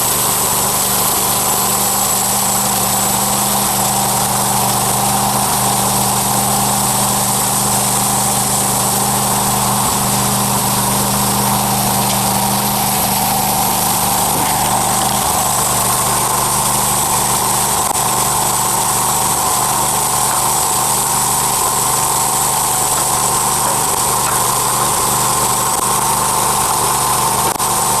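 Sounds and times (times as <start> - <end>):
sawmill engine drone with whine: 0.0 - 28.0.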